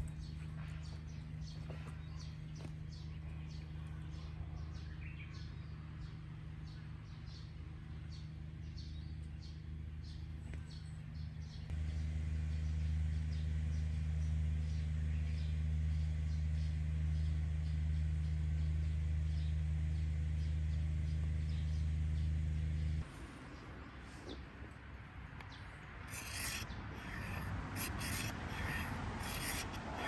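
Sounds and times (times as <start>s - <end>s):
low mechanical hum: 0.0s - 30.0s
small birds chirping: 25.4s - 30.0s.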